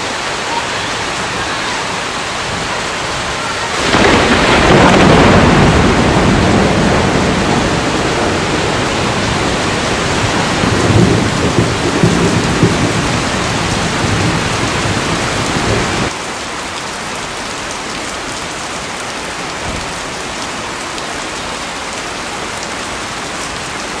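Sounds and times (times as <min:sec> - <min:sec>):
steady rain: 0:00.0 - 0:24.0
rolling thunder: 0:02.2 - 0:16.1.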